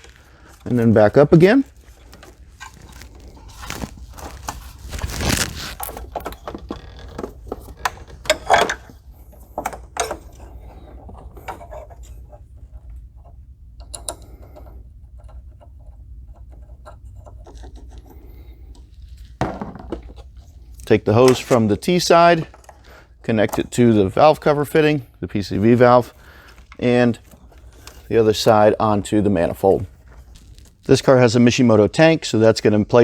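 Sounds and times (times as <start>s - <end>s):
rubber hose scraping engine parts: 0.0s - 12.5s, 20.0s - 31.4s.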